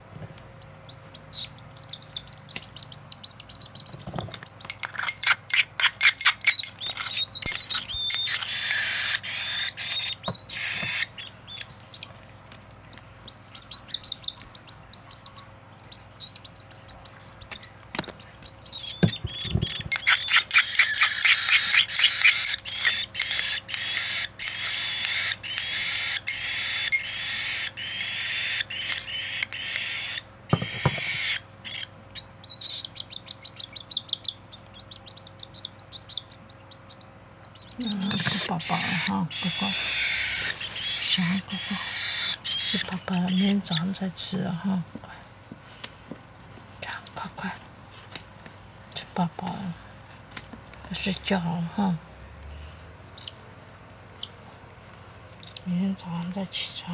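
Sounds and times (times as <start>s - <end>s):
cockatiel chick begging calls: 0.6s - 12.1s, 13.0s - 43.9s.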